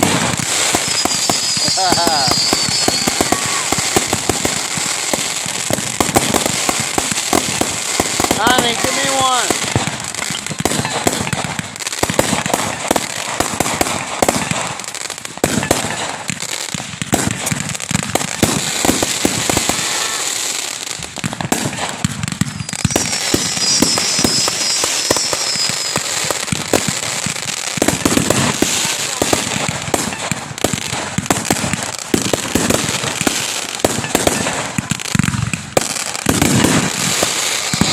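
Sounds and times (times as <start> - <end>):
fireworks crackling and popping: 0.0 - 37.9
high wavering whistle: 0.8 - 3.5, 22.6 - 26.1.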